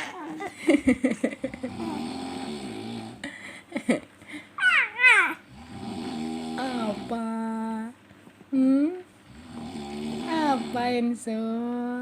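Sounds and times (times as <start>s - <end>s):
baby squealing coo: 0.0s - 0.5s, 4.6s - 5.4s
man snoring: 1.4s - 3.3s, 5.5s - 7.2s, 9.3s - 11.0s.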